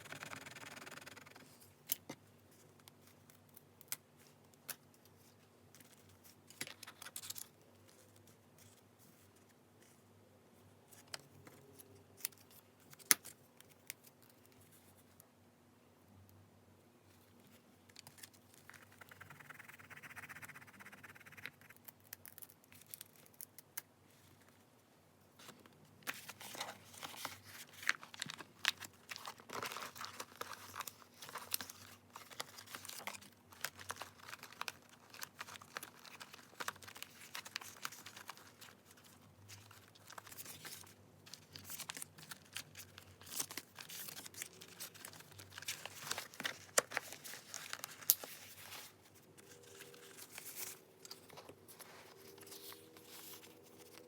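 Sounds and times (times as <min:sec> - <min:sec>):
paper rustling and crinkling: 0:25.4 - 0:54.0.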